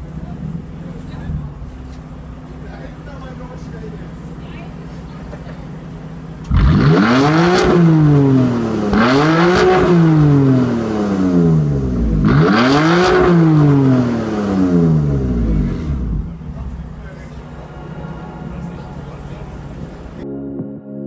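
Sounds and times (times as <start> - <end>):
car engine revving: 0.0 - 20.2.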